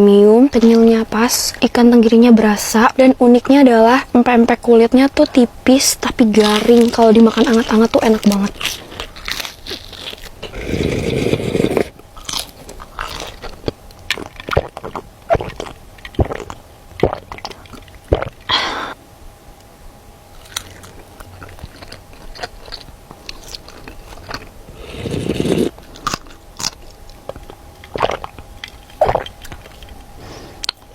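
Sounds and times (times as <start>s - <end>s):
crispy food crunching: 5.0s - 18.5s, 20.3s - 30.9s.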